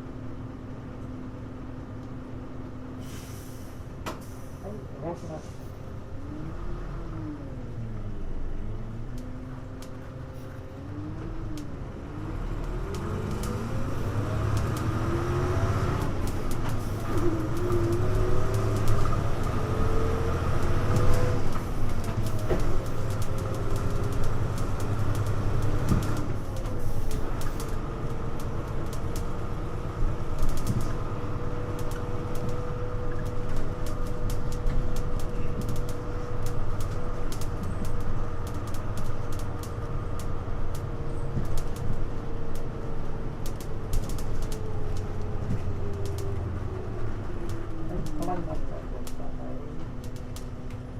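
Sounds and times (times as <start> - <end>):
bus engine rumble: 0.0 - 50.9
gliding whine of bus: 0.0 - 50.9
light rattling clicks: 31.6 - 50.9.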